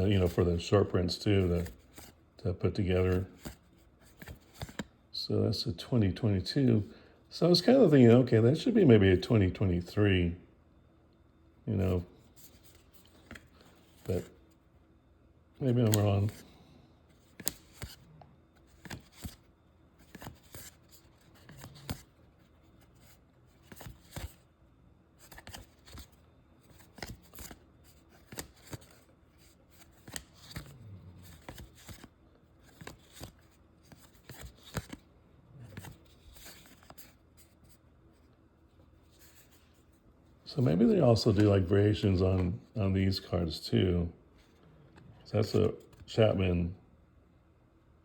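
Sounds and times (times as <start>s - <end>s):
cards sliding and flicking: 3.3s - 4.9s, 11.9s - 14.4s, 15.8s - 16.5s, 17.1s - 24.4s, 25.2s - 35.0s, 35.6s - 38.2s.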